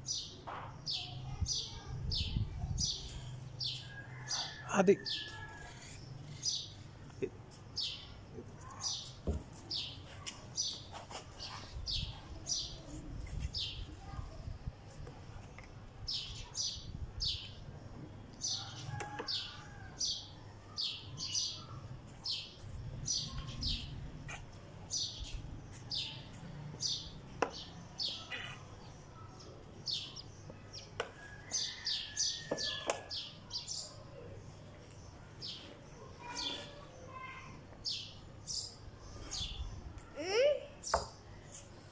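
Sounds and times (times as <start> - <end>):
sparrow chirping: 18.5 - 34.0.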